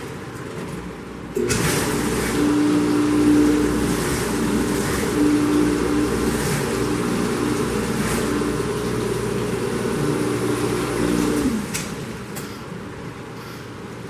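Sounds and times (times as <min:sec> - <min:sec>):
dishwasher motor hum: 0:00.0 - 0:14.0
water rushing noise: 0:01.4 - 0:12.4.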